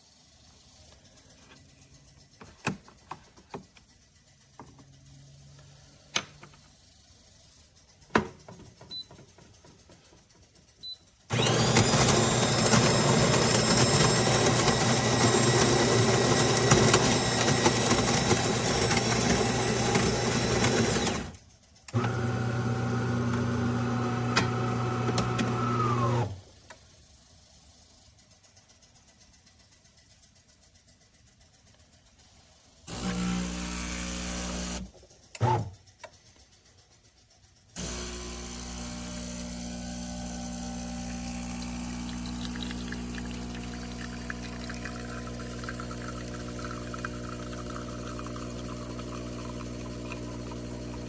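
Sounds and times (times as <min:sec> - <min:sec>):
espresso machine motor running: 0:11.3 - 0:26.4, 0:32.9 - 0:35.7, 0:37.8 - 0:51.0.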